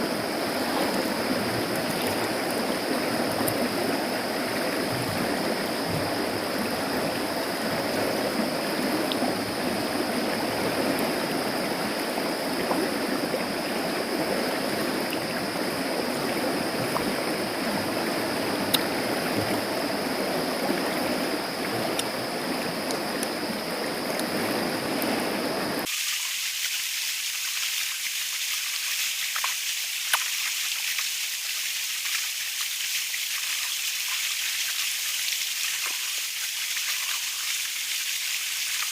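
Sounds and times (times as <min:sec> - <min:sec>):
river water rushing: 0:00.0 - 0:25.9.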